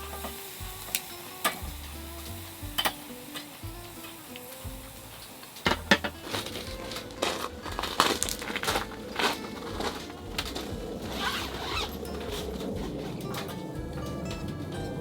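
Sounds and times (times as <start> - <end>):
plastic packaging crinkling: 5.6 - 13.5.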